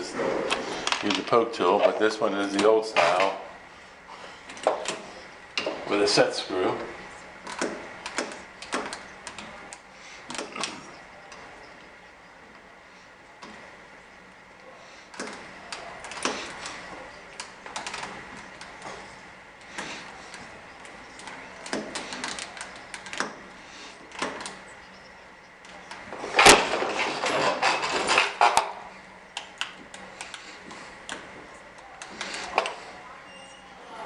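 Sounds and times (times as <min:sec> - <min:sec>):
metal lock parts clicking: 0:19.7 - 0:23.4.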